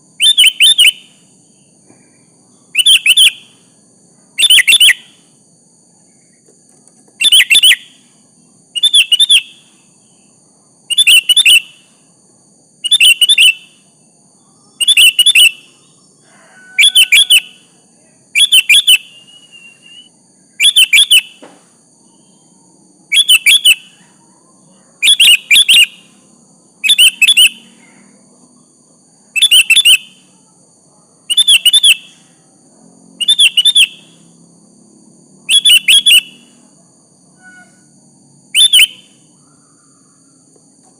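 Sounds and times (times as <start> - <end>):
bulbul calling: 0.2 - 1.2, 2.7 - 3.6, 4.4 - 5.2, 7.2 - 8.0, 8.8 - 9.7, 10.9 - 11.9, 12.8 - 13.8, 14.7 - 15.8, 16.8 - 17.6, 18.4 - 21.5, 23.1 - 24.1, 25.0 - 26.1, 26.8 - 27.7, 29.4 - 30.2, 31.3 - 32.2, 33.2 - 34.2, 35.5 - 36.5, 38.5 - 39.8.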